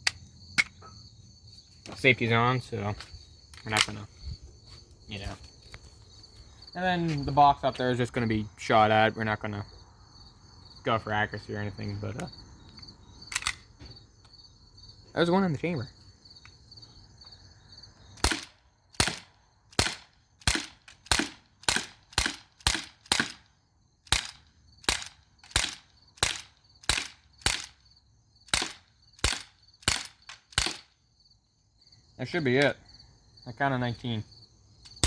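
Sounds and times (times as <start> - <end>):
bb pistol shots: 13.3 - 13.6, 18.2 - 23.5, 24.1 - 27.8, 28.5 - 30.9.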